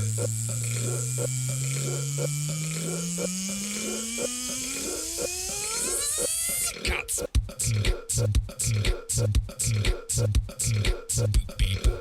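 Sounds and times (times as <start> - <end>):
buzzy tone rising in pitch: 0.0 - 6.8
electronic beat: 0.0 - 12.0.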